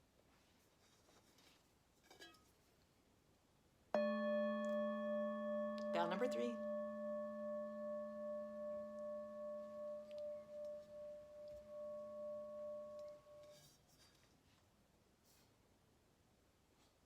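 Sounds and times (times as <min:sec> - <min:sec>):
bell ringing: 0:04.0 - 0:13.4.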